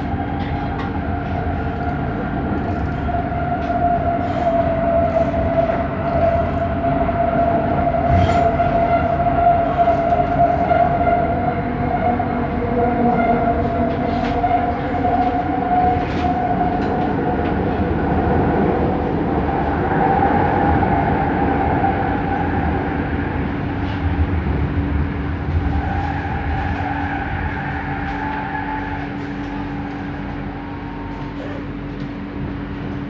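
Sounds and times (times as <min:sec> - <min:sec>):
train motor whine: 0:00.0 - 0:12.3
train ride rumble: 0:00.0 - 0:33.0.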